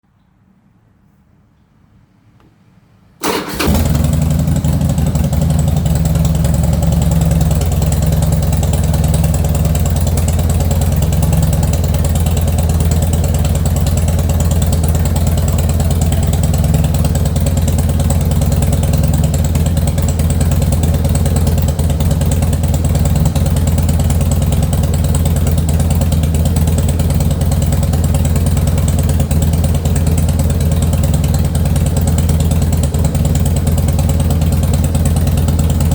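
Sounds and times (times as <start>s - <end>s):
motorcycle engine starter cranking: 3.2s - 7.4s
motorcycle engine idling: 3.2s - 35.9s.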